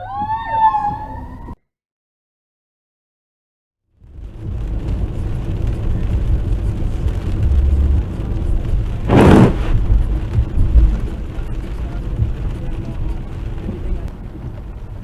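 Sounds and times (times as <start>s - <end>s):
car rumbling on road: 3.9s - 15.0s
loud burst of noise: 9.0s - 9.9s.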